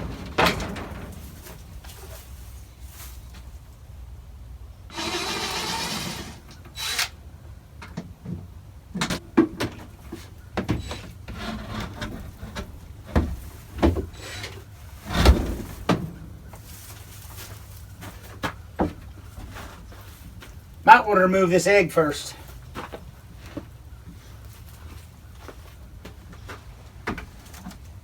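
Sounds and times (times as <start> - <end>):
wood knocking and clattering: 0.0 - 2.3, 7.9 - 14.2
wooden boards scraping: 0.0 - 3.2, 4.9 - 7.0, 10.1 - 20.1.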